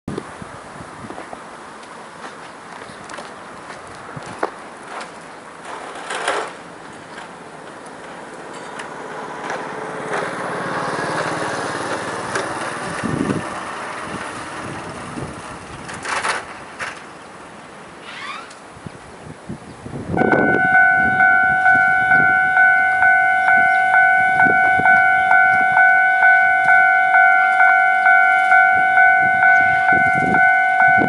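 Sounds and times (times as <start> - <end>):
vehicle engine passing by: 8.9 - 16.0.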